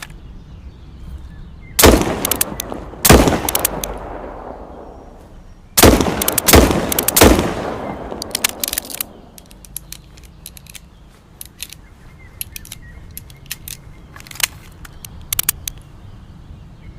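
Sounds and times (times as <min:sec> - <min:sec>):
faint clicks: 0:08.1 - 0:15.9.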